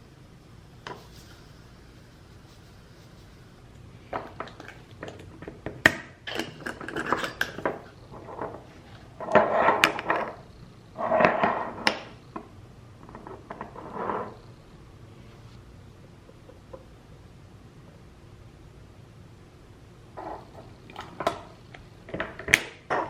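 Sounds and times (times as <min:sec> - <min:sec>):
glass jars clinking: 0:06.2 - 0:08.6
scraping noise: 0:13.5 - 0:14.5.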